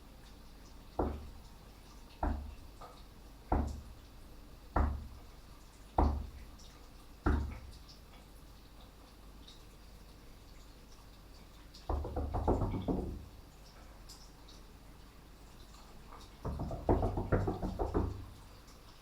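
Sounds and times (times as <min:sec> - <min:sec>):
heavy knocks in tiled room: 0:01.0 - 0:01.4, 0:02.2 - 0:02.6, 0:03.5 - 0:04.0, 0:04.7 - 0:05.2, 0:06.0 - 0:06.4, 0:07.2 - 0:07.7, 0:11.9 - 0:13.3, 0:16.4 - 0:18.3.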